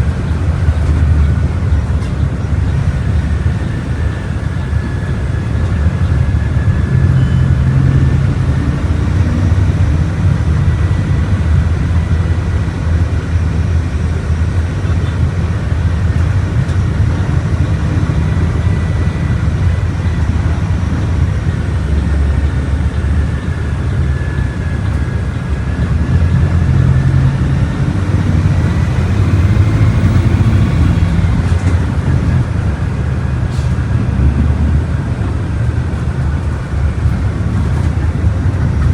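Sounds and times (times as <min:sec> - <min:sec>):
bus diesel engine rumble: 0:00.0 - 0:38.9
road noise: 0:00.0 - 0:38.9
faint high whine: 0:17.4 - 0:32.6.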